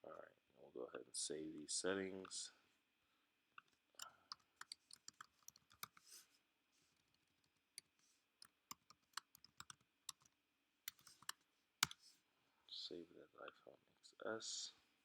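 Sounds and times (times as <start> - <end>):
computer keys clicking: 4.0 - 6.0, 7.0 - 10.3, 10.9 - 12.0
mouse buttons clicking: 4.3 - 6.1, 10.9 - 12.0.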